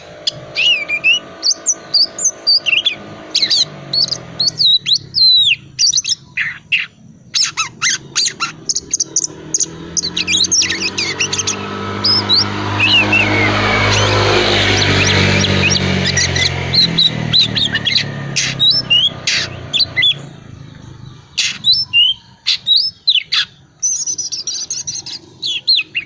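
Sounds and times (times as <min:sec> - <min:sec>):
magpie-robin chattering: 0:00.0 - 0:26.0.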